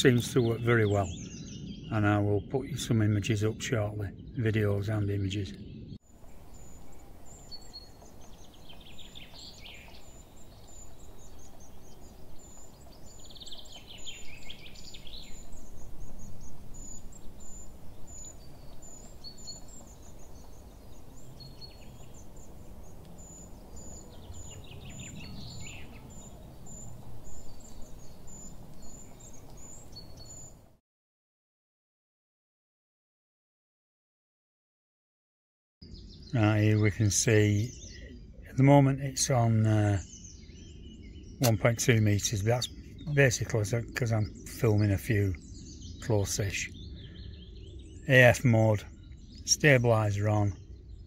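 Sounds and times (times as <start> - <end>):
low outdoor rumble: 0.0 - 30.6
descending birdsong: 0.0 - 30.8, 35.8 - 51.0.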